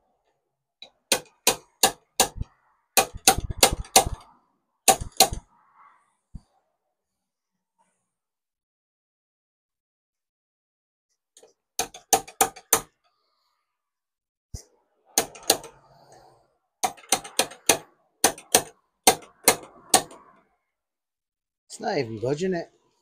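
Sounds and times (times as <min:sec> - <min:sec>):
slide hammer knocking: 0:00.8 - 0:04.3, 0:04.9 - 0:05.4, 0:11.8 - 0:12.9, 0:15.1 - 0:15.8, 0:16.8 - 0:20.2.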